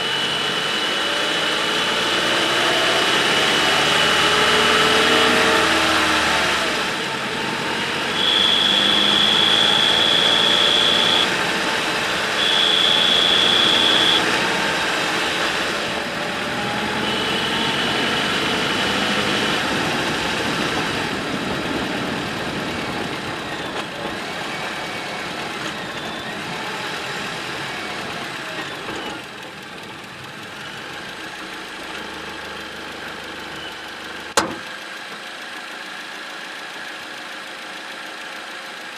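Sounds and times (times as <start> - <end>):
high-pitched engine whistle: 0.0 - 6.4, 7.6 - 20.0, 22.8 - 27.1, 32.4 - 34.2
car engine running: 0.0 - 38.9.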